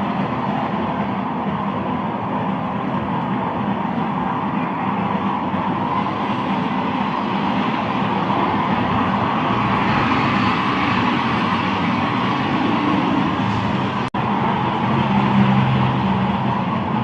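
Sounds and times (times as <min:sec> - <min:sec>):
vehicle running noise: 0:00.0 - 0:17.0.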